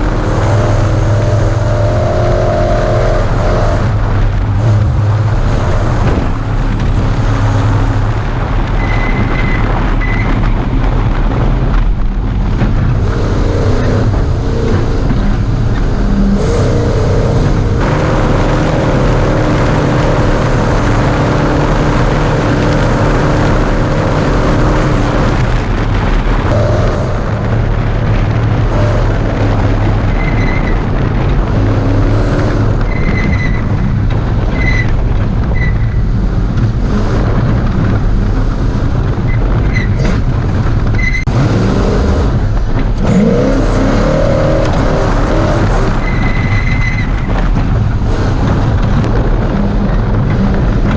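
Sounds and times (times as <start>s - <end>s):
truck engine running hard: 0.0s - 50.9s
wind and road noise: 0.0s - 50.9s.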